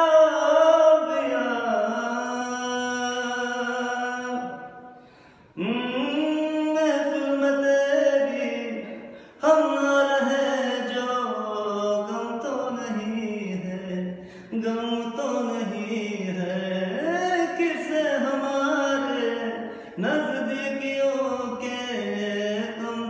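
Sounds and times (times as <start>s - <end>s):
man singing unaccompanied: 0.0s - 5.0s, 5.6s - 23.0s.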